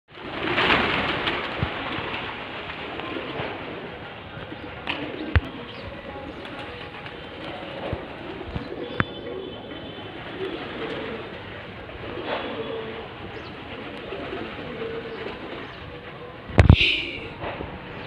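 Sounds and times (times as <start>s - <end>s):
pigeons cooing: 0.2s - 18.0s.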